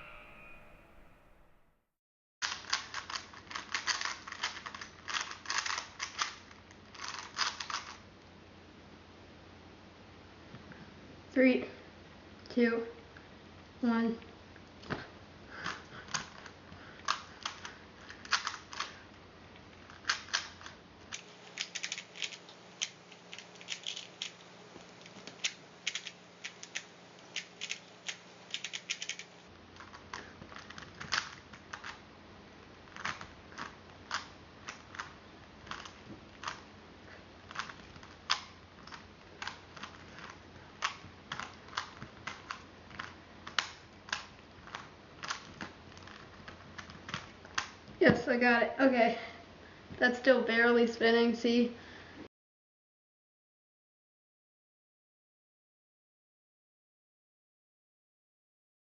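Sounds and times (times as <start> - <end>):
plastic puzzle cube clicking: 2.4 - 8.0, 15.6 - 19.0, 19.9 - 24.4, 25.0 - 32.0, 32.9 - 36.6, 37.5 - 47.8.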